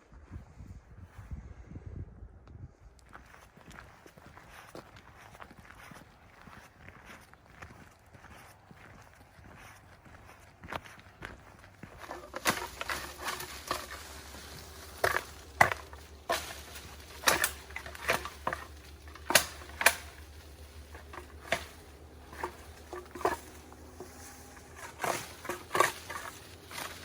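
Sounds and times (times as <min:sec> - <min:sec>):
faint low hum: 0:00.0 - 0:27.0
crunches and knocks: 0:10.2 - 0:27.0.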